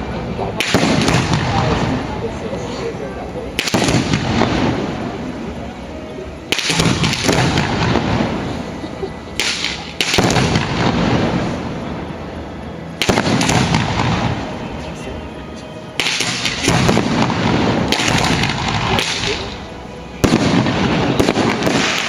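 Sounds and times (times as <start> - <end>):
firework shells bursting: 6.5 - 8.5, 16.0 - 22.0.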